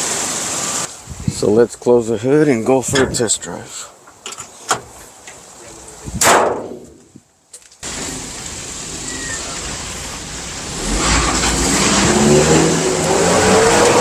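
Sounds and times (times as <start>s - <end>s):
car engine accelerating: 7.9s - 14.0s.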